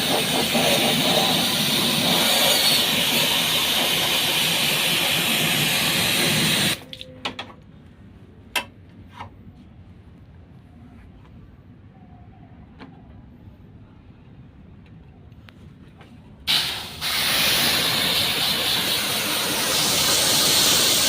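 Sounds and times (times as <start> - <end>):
water spray jet hissing: 0.0 - 6.8, 16.5 - 21.0.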